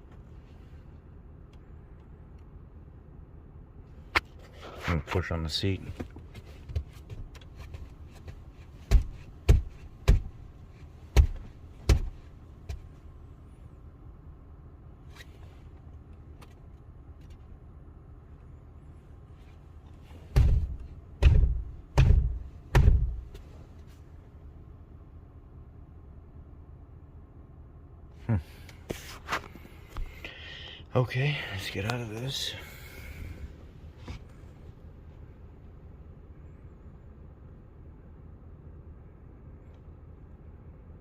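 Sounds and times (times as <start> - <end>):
hand thumping on seat cushion: 7.8 - 10.5, 11.1 - 12.9, 20.3 - 23.4.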